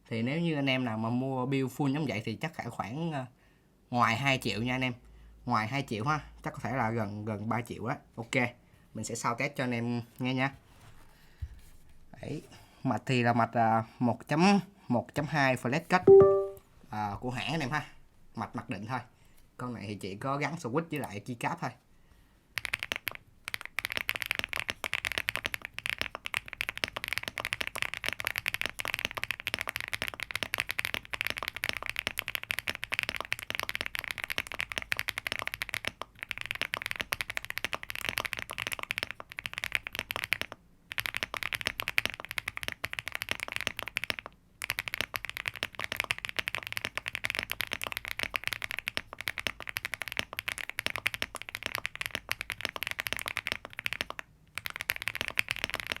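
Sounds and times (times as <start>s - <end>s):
rapid typing on mechanical keyboard: 22.6s - 56.0s.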